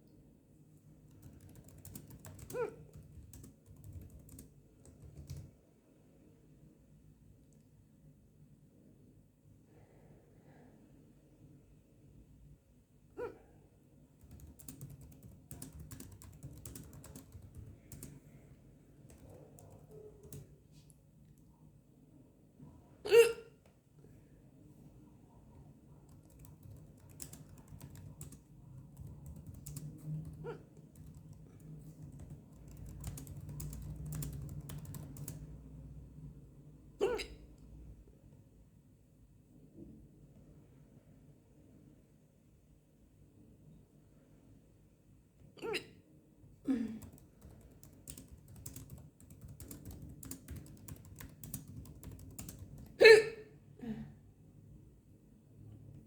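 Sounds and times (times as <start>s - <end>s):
computer keyboard typing: 1.1s - 5.6s, 14.2s - 18.4s, 19.0s - 20.6s, 26.0s - 35.8s, 47.0s - 53.0s
woman hiccuping: 23.0s - 23.6s, 37.0s - 37.4s, 45.6s - 46.0s, 53.0s - 54.0s.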